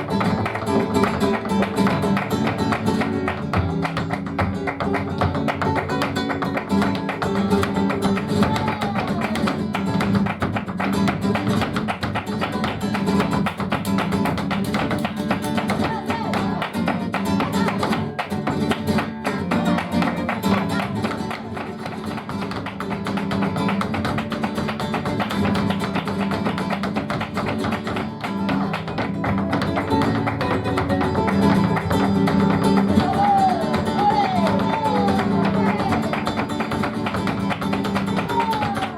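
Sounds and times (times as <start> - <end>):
flamenco guitar playing: 0.0 - 38.9
person singing: 8.3 - 9.6, 15.7 - 16.8, 32.8 - 36.4, 38.0 - 38.9.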